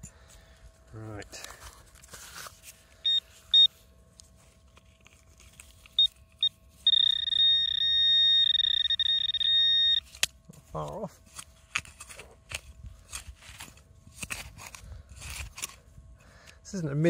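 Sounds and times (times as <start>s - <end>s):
metal detector beeping: 3.0s - 3.8s, 5.8s - 10.2s
metal detector continuous tone: 3.0s - 11.5s.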